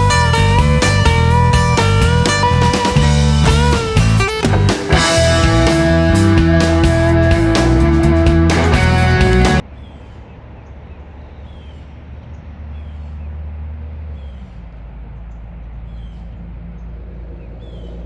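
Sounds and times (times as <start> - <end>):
background music: 0.0 - 9.6
steady low rumble: 0.0 - 9.7, 10.3 - 18.0
bird chirping: 9.6 - 13.4, 14.1 - 18.0.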